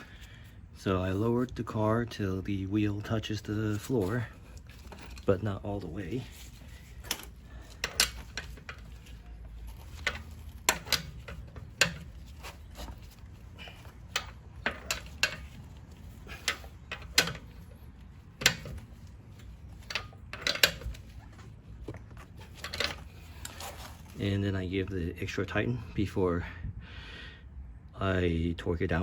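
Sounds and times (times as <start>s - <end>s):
socket wrench clicking: 16.4s - 17.7s.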